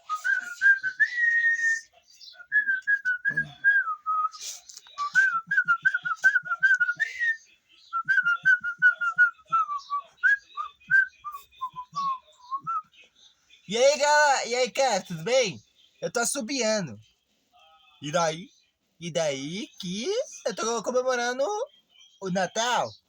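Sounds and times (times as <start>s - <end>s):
person whistling a tune: 0.0s - 12.9s.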